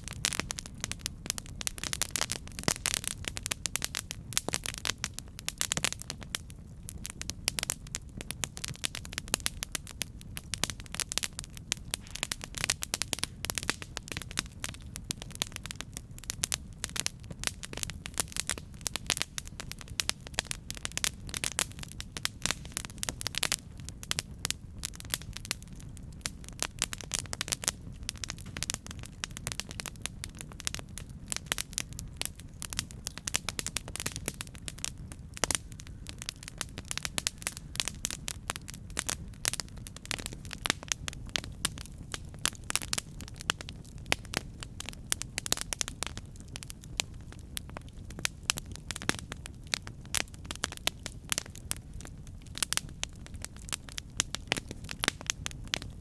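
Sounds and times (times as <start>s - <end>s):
low rumble of flames: 0.0s - 56.0s
wood fire crackling and popping: 0.0s - 56.0s.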